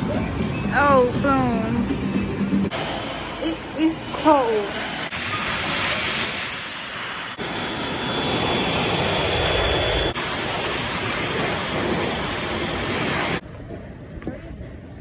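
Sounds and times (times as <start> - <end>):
wind: 0.0 - 15.0.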